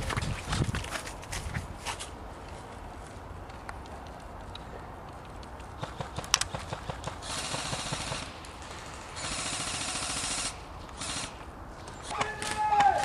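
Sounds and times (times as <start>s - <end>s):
airsoft gun firing: 5.8s - 11.4s, 12.0s - 13.0s.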